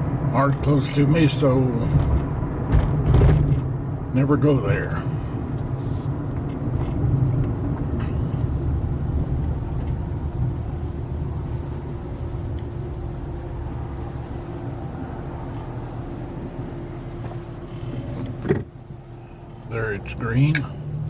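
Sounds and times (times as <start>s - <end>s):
car engine and road rumble: 0.0s - 21.0s
faint steady hum: 4.2s - 21.0s.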